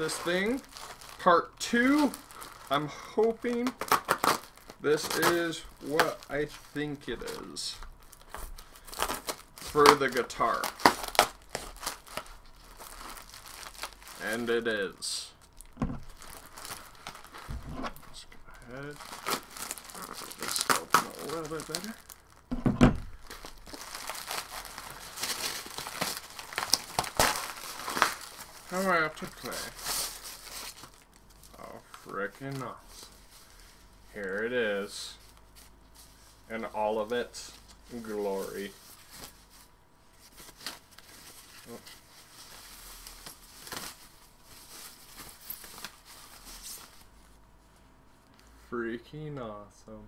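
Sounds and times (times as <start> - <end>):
packaging crinkling and tearing: 0.0 - 33.6, 40.2 - 47.1
thump: 15.8 - 16.0, 17.5 - 17.9, 22.5 - 23.1.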